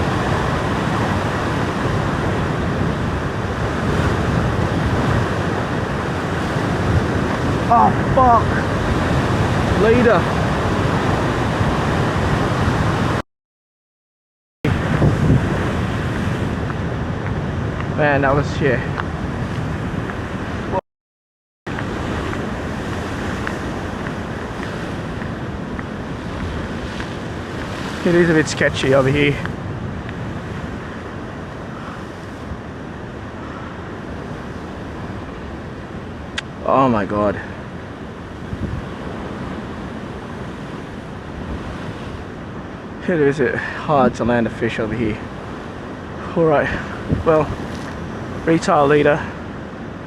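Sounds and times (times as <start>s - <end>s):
wind buffeting microphone: 0.0s - 13.2s, 14.7s - 20.8s, 21.7s - 36.6s, 37.3s - 43.0s, 45.1s - 50.0s
ocean swell surging against rock: 21.7s - 50.0s.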